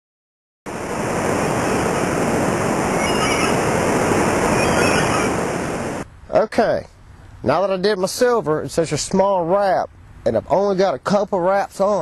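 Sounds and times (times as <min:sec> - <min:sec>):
loud rushing noise: 0:00.7 - 0:06.1.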